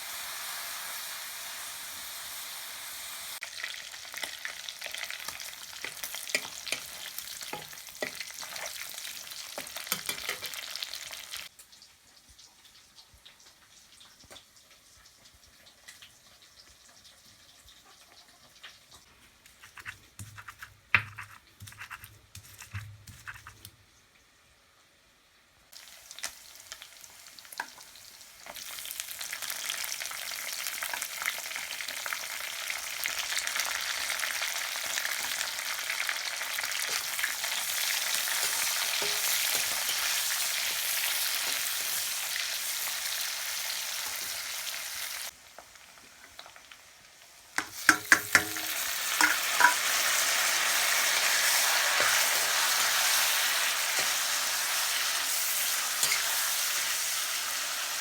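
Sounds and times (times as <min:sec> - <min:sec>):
pork sizzling in a pan: 0:00.0 - 0:23.6, 0:25.7 - 0:58.0
metal clanks against pan: 0:05.8 - 0:08.3, 0:09.6 - 0:10.6, 0:38.4 - 0:40.2, 0:47.6 - 0:49.9.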